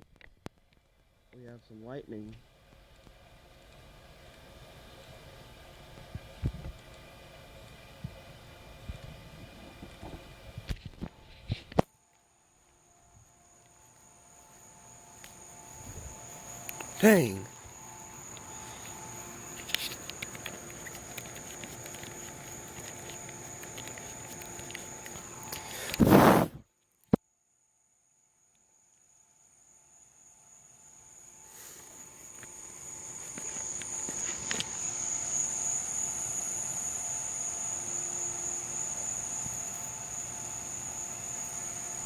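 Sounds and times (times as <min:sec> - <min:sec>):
crickets chirping: 0:11.9 - 0:26.4, 0:27.3 - 0:42.0
insects chorus: 0:12.1 - 0:26.5, 0:28.8 - 0:42.0
faint clicks: 0:19.6 - 0:26.0.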